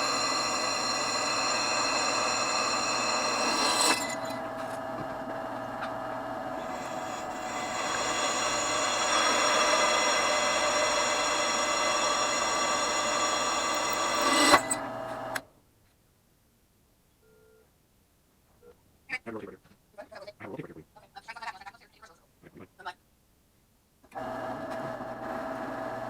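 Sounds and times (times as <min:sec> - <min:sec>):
drill press whirring and grinding: 0:00.0 - 0:15.4, 0:24.2 - 0:26.0.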